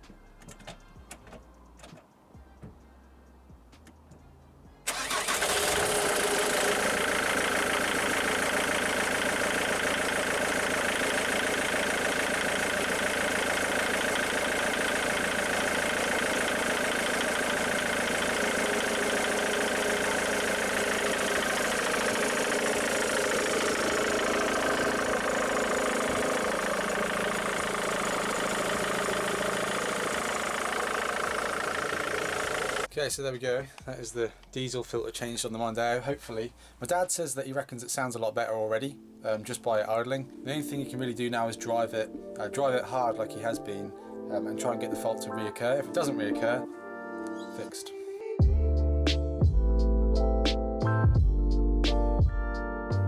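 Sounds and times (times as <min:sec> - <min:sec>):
diesel engine starting and idling: 0:04.8 - 0:32.9.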